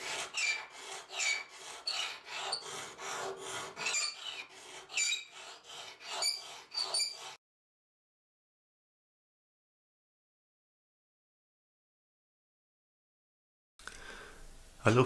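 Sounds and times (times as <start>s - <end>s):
ceramic rod rasping on knife blade: 0.0s - 7.4s
short high squeak: 4.9s - 5.3s, 6.1s - 7.4s.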